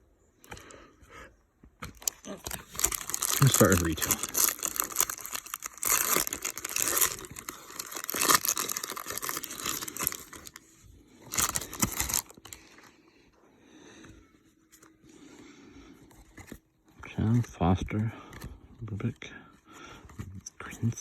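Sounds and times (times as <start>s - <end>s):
card pack wrapper tearing: 1.9s - 10.6s, 11.2s - 12.6s.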